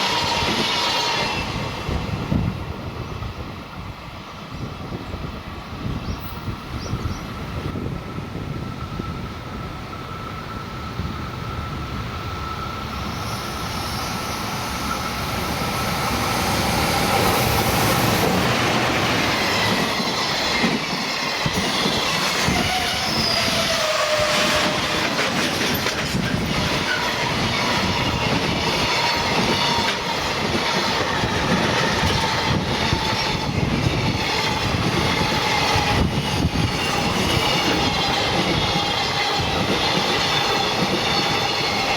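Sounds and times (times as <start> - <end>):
freight train passing: 0.0 - 41.9
wheels clicking over rail joints: 18.2 - 41.9.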